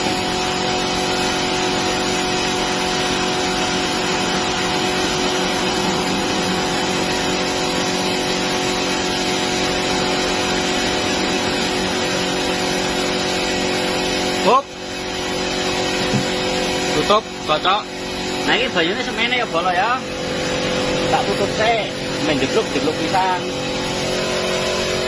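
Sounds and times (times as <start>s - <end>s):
machine droning: 0.0s - 25.0s.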